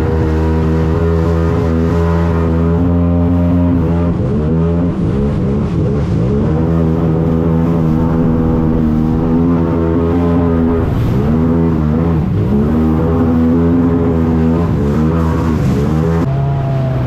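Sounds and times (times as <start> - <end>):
jet ski engine revving: 0.0 - 17.0.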